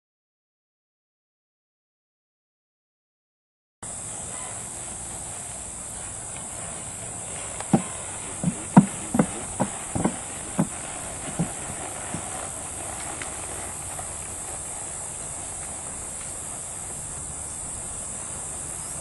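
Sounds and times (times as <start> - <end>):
steady hiss: 3.8 - 19.0
horse hoofbeats: 4.0 - 19.0.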